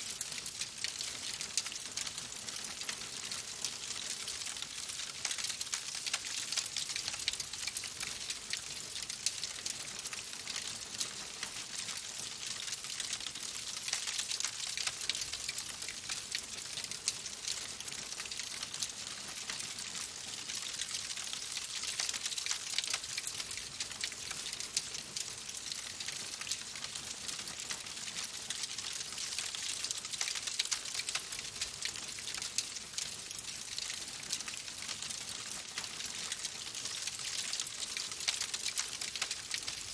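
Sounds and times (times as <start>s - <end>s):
wood fire crackling: 28.8s - 32.6s.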